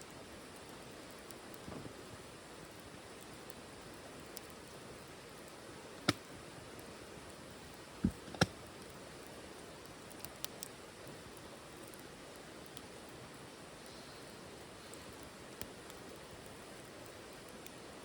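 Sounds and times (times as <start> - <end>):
faint ticks: 0.0 - 4.8, 5.4 - 18.0
wood fire hissing and crackling: 0.0 - 18.0.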